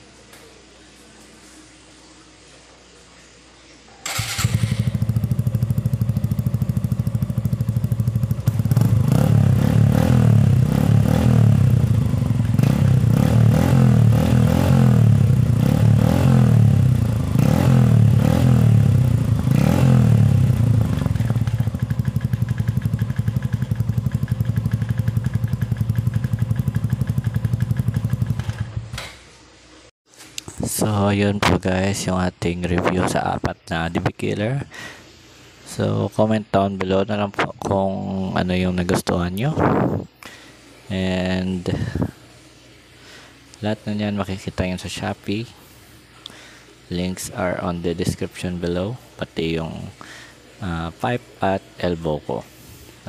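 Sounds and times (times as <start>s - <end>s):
motorcycle engine revving and idling: 4.1s - 29.0s.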